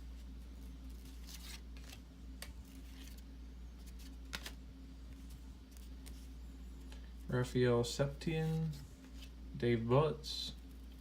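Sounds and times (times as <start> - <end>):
low steady hum: 0.0 - 11.0
cards sliding against each other: 1.0 - 3.2, 3.8 - 6.3.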